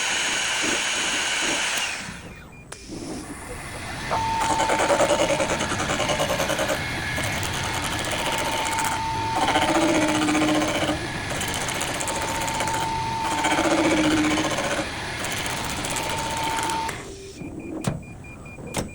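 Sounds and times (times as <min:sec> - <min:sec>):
motor whine: 0:00.0 - 0:18.2
lathe rattling chatter: 0:03.3 - 0:16.9.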